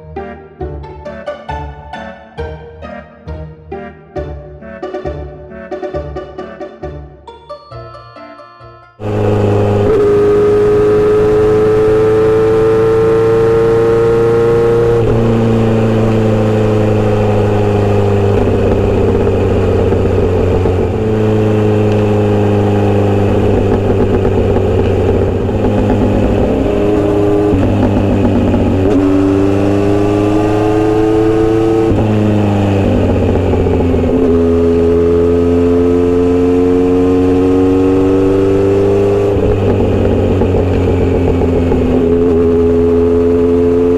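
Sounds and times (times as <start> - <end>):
motorcycle engine revving: 9.0 - 43.9.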